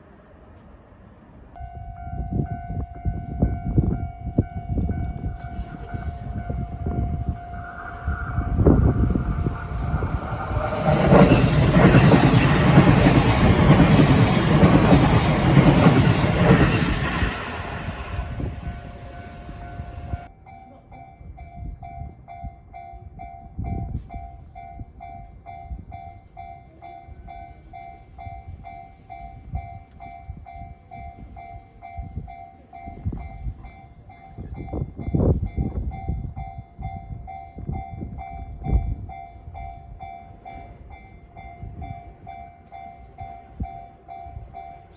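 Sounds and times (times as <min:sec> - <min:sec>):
train passing: 0:00.0 - 0:44.9
low rumble: 0:01.6 - 0:13.6.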